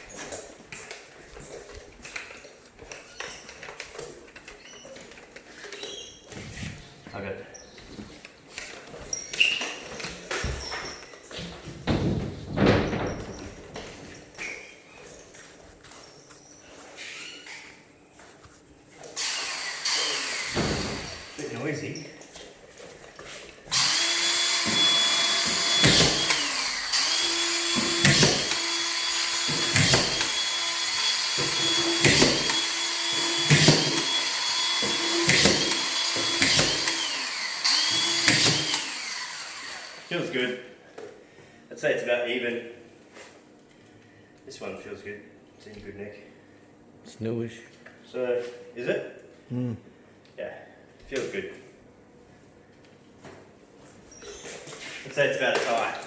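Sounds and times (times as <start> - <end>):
screw gun whining and clicking: 19.1 - 21.6, 23.7 - 40.1.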